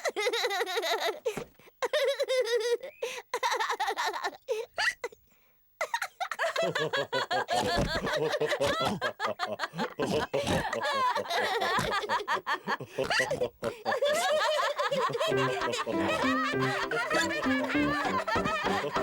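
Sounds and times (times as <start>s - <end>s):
cartoon characters laughing: 5.8s - 19.0s.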